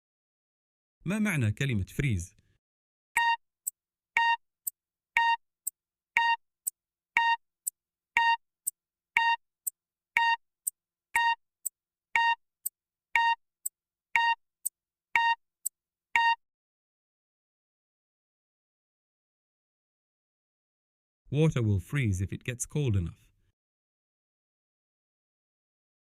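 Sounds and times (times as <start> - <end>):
short electronic beep: 3.2 - 3.4, 12.2 - 12.4, 13.2 - 13.4, 15.2 - 15.4.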